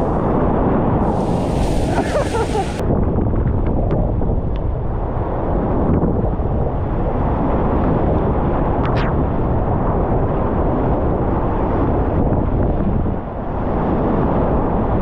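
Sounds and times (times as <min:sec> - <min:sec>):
wind buffeting microphone: 0:00.0 - 0:15.0
whitewater rapids rushing: 0:01.0 - 0:02.8.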